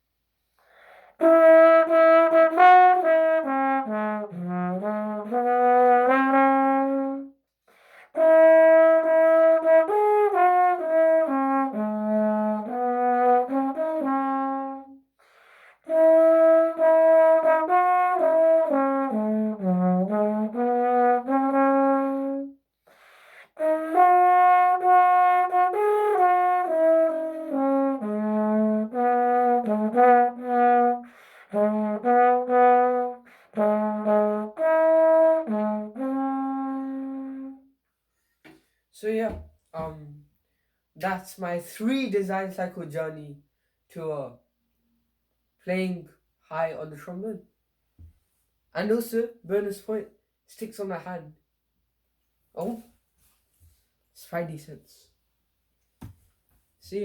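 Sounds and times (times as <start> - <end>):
trombone melody: 1.2 - 7.4, 8.1 - 15.0, 15.8 - 22.6, 23.2 - 37.7.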